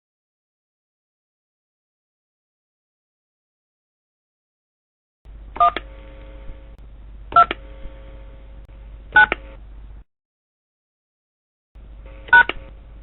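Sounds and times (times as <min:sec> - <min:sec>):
faint line hum: 0:05.3 - 0:10.0, 0:11.8 - 0:13.0
telephone keypad beeps: 0:05.6 - 0:05.9, 0:07.3 - 0:07.6, 0:09.2 - 0:09.4, 0:12.3 - 0:12.6.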